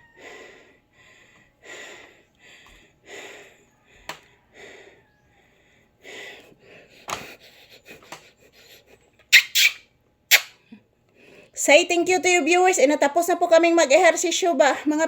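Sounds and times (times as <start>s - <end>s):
person panting: 0.0s - 9.1s.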